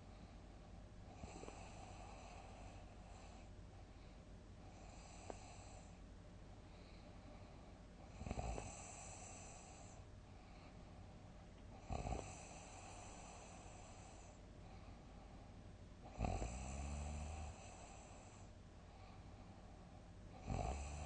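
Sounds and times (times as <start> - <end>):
quiet breathing: 0.0 - 21.0
person snoring heavily: 16.1 - 18.3, 20.4 - 21.0.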